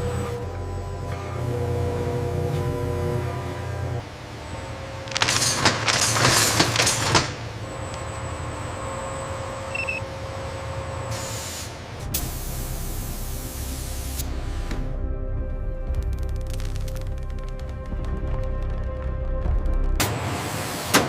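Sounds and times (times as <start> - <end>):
machinery mechanical hum: 0.0 - 14.9
machinery hissing bursts: 11.1 - 14.4.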